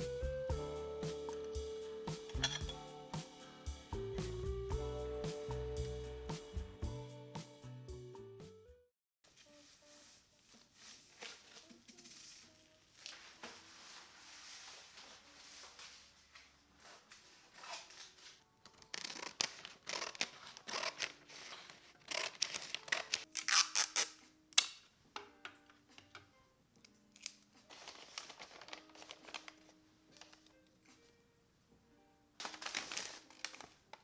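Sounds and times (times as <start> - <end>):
soft background music: 0.0 - 34.0.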